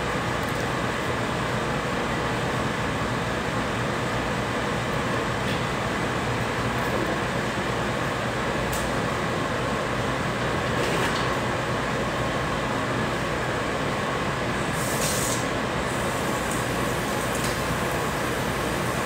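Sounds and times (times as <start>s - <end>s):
background hum and hiss: 0.0s - 19.0s
short bright hiss: 14.8s - 15.5s.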